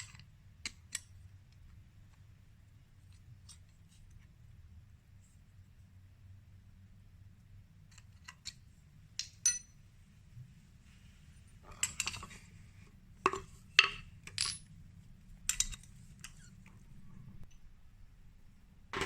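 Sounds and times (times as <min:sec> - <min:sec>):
metal tools clinking: 0:09.2 - 0:09.8, 0:13.3 - 0:14.7.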